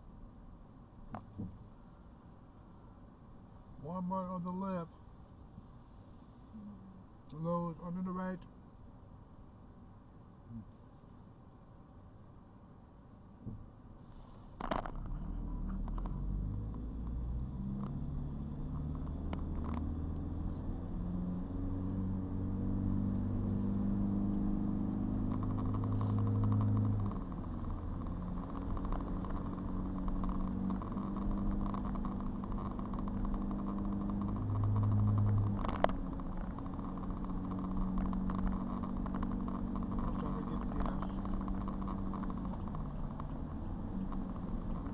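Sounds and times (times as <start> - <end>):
road noise: 0.0 - 44.9
car engine revving while driving: 14.8 - 44.9.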